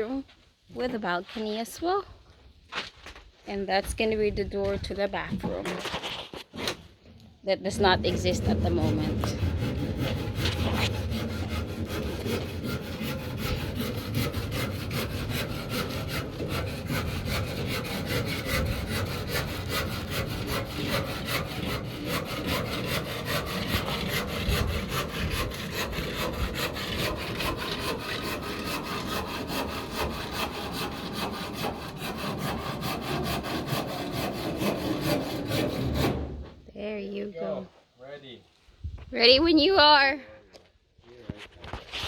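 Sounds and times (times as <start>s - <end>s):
hand saw cutting wood: 5.4s - 6.9s, 7.6s - 36.6s.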